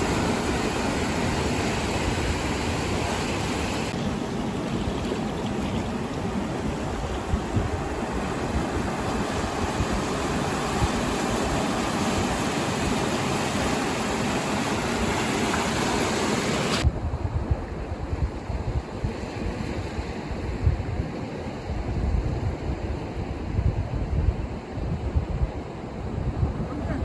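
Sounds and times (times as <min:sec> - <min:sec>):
ocean surf rushing: 0:00.0 - 0:21.0
wind buffeting microphone: 0:00.0 - 0:27.0.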